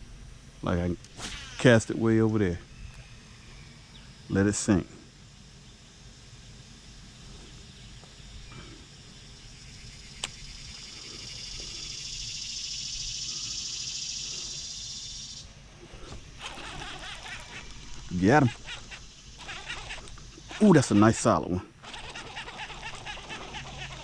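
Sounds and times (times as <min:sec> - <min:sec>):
cicada buzzing: 0:00.0 - 0:24.0
faint outdoor background: 0:00.0 - 0:24.0
sharp click: 0:10.2 - 0:10.4.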